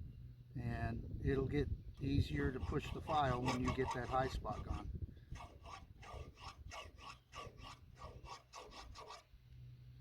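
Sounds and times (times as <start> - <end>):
file rasping on steel: 2.2 - 9.3.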